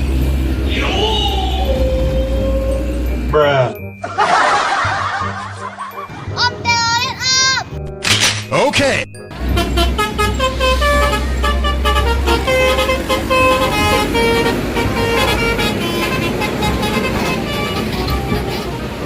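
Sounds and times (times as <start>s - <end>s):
bus horn playing a tune: 9.4s - 19.0s.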